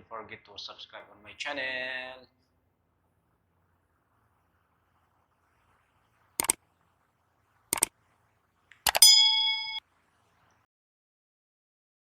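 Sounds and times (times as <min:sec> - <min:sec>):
bright bell ding: 0:08.9 - 0:09.8
sharp button clicks: 0:08.9 - 0:09.8.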